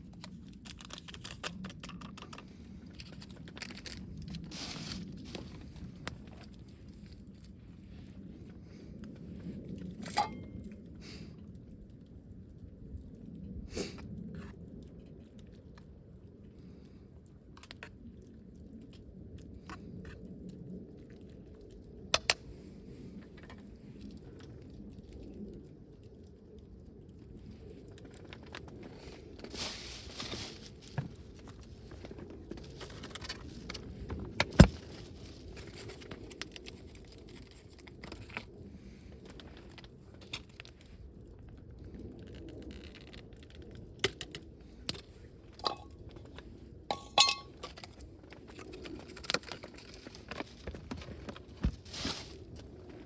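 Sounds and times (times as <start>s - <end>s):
low wind rumble: 0.0s - 53.0s
clicks and metal clinks: 46.9s - 47.9s.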